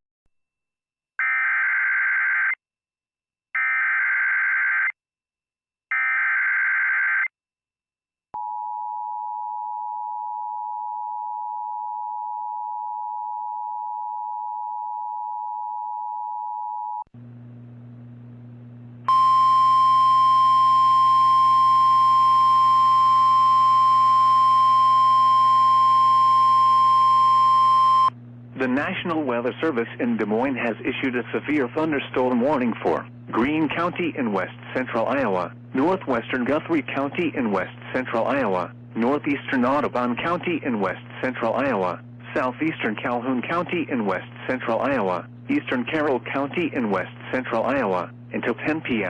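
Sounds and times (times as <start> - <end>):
low hum: 17.2 - 33.6
two-tone attention signal: 19.1 - 28.1
steady single tone: 19.1 - 28.2.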